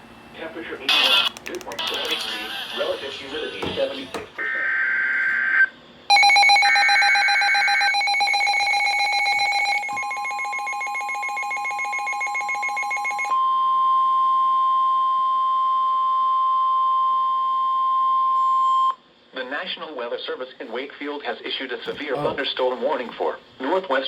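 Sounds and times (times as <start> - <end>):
pulsing electronic alarm beep: 6.1 - 13.6
steady warning alarm tone: 6.1 - 14.6.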